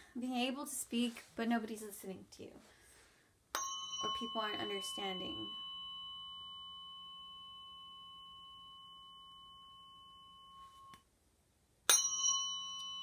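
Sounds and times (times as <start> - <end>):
tuning fork ringing: 3.5 - 11.1, 11.9 - 13.0.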